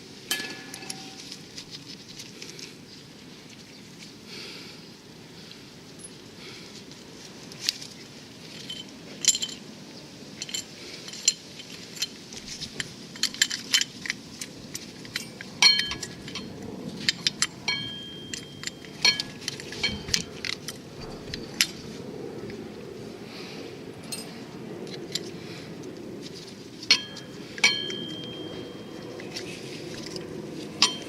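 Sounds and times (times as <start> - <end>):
metal tools clinking: 0.3 - 1.8, 8.5 - 9.7, 10.4 - 22.0, 24.0 - 24.4, 26.8 - 31.0.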